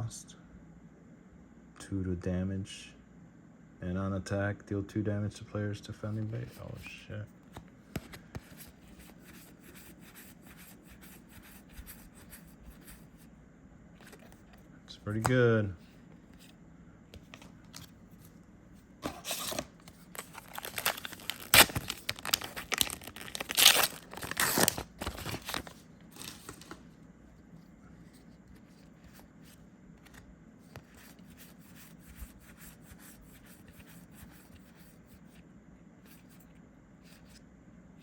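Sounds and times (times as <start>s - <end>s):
cards being handled: 6.0s - 13.2s, 14.0s - 18.4s, 19.0s - 35.4s
foil wrapper tearing and crinkling: 20.1s - 26.7s.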